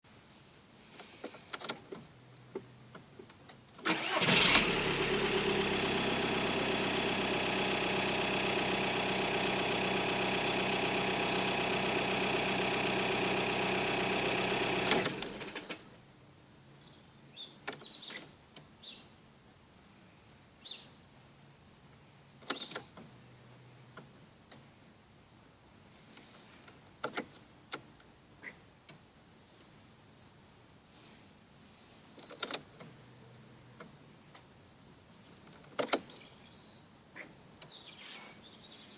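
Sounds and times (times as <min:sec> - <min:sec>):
diesel engine idling: 0:03.9 - 0:15.7.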